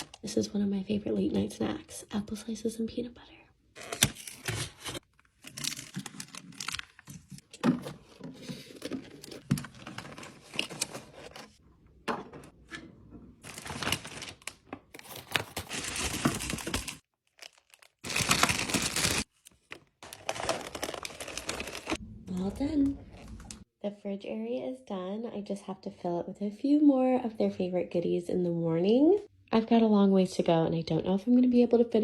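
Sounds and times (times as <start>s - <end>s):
plastic packaging crinkling: 3.8s - 11.6s, 13.4s - 22.0s.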